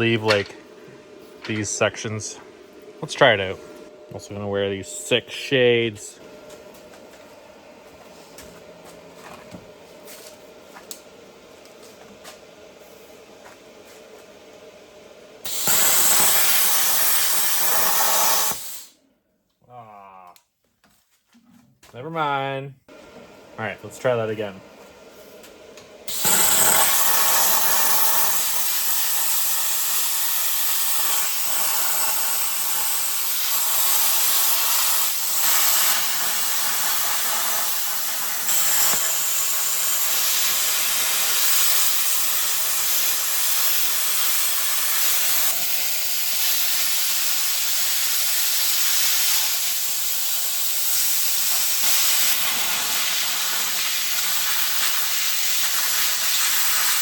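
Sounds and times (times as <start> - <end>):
plasma cutter hissing: 15.5 - 19.0, 26.1 - 57.0.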